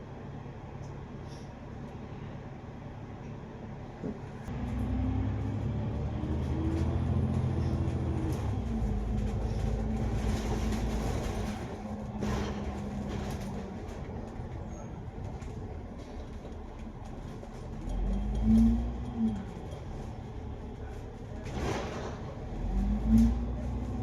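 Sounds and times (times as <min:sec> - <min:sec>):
bus diesel engine from inside: 0:00.0 - 0:24.0
steady drivetrain whine: 0:04.5 - 0:21.1.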